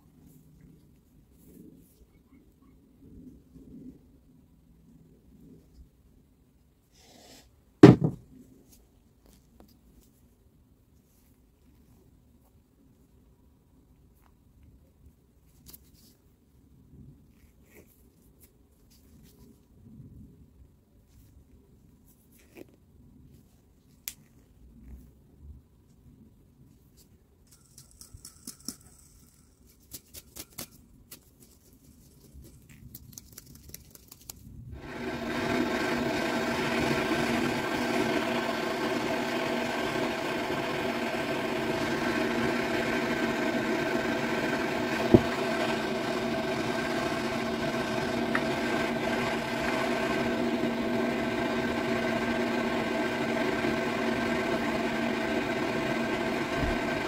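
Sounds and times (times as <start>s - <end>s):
washing machine humming: 34.8s - 57.0s.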